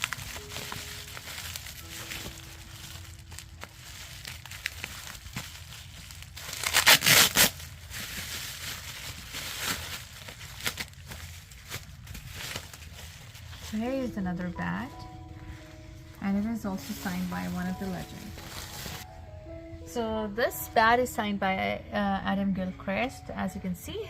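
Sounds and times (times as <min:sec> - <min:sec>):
packaging crinkling and tearing: 0:00.0 - 0:14.1, 0:16.8 - 0:19.1.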